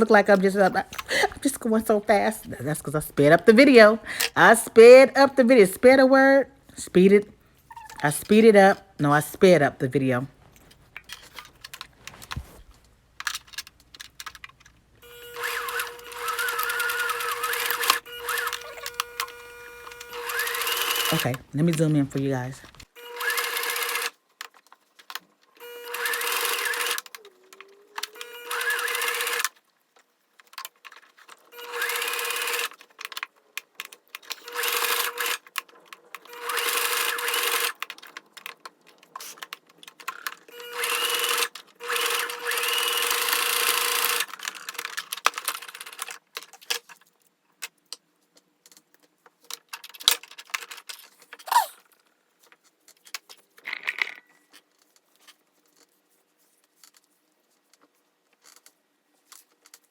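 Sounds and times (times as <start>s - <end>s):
clicks and handling sounds: 10.4s - 22.9s, 24.3s - 25.6s, 26.5s - 31.5s, 37.6s - 40.5s, 44.1s - 59.9s
sewing machine running: 15.0s - 21.3s, 23.0s - 24.1s, 25.6s - 27.1s, 28.0s - 29.5s, 31.6s - 32.7s, 34.5s - 35.4s, 36.3s - 37.8s, 40.6s - 44.4s.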